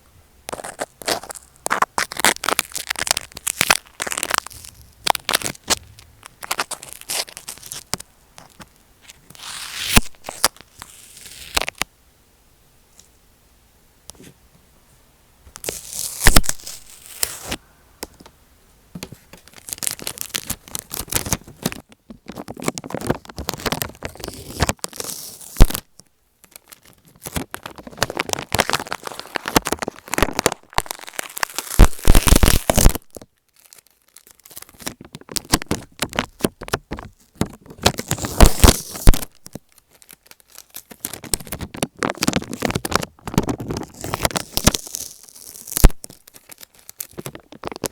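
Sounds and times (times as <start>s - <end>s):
scratching on taped microphone: 0.5s - 11.6s, 19.0s - 25.8s, 27.0s - 33.0s, 34.8s - 39.6s, 41.0s - 46.2s, 47.1s - 47.9s.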